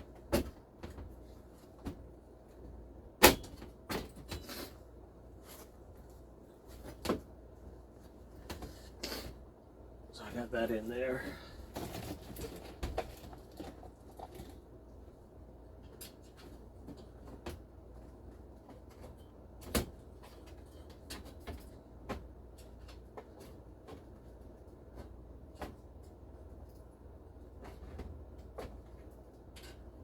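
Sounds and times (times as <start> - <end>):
clicks and knocks of metal parts: 27.6 - 30.0.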